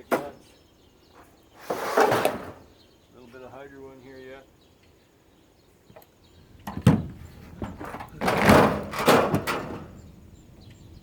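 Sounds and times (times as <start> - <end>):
parts scraping and rattling: 1.2 - 2.7, 6.6 - 10.3.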